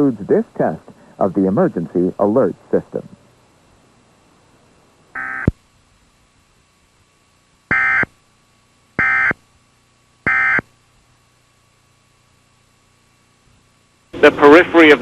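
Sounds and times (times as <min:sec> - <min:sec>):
buzzy two-tone digital bursts: 0:05.1 - 0:05.5, 0:07.7 - 0:08.2, 0:09.0 - 0:09.4, 0:10.2 - 0:10.7.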